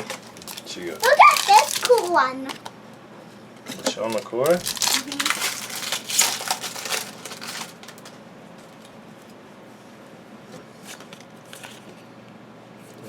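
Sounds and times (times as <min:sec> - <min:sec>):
foil card pack crinkling: 0:00.0 - 0:02.7, 0:04.0 - 0:09.0, 0:10.8 - 0:11.9.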